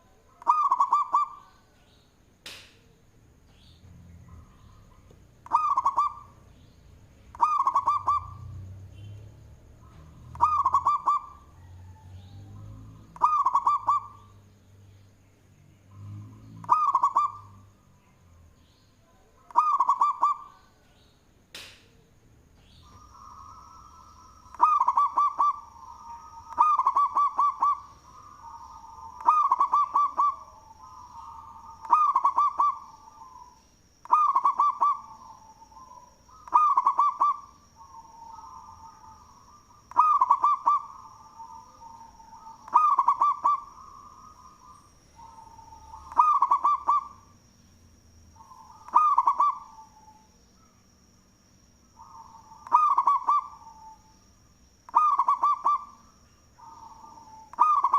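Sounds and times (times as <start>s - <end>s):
dove cooing: 0.0s - 1.8s, 3.8s - 6.6s, 7.3s - 8.8s, 9.8s - 14.4s, 15.9s - 17.7s, 19.1s - 20.8s, 22.8s - 47.3s, 48.3s - 50.3s, 51.9s - 54.1s, 54.9s - 57.9s
sharp click: 2.4s - 2.9s, 21.5s - 22.0s
faint high-pitched tone: 22.8s - 29.2s.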